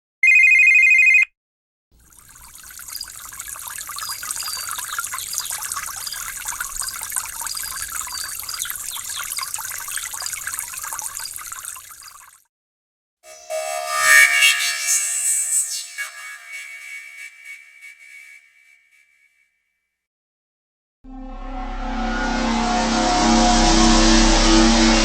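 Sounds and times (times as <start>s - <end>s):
running water trickling: 2.0s - 12.4s
loud electronic beep: 13.3s - 18.6s, 21.1s - 25.0s
faint high chirps: 13.4s - 18.6s.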